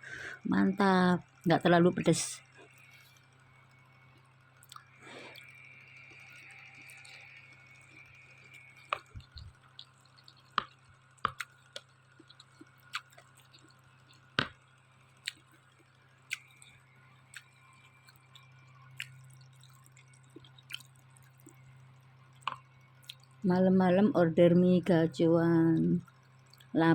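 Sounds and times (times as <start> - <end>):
faint low hum: 0.0 - 26.9
person chewing noisily: 4.6 - 21.7, 22.3 - 23.5.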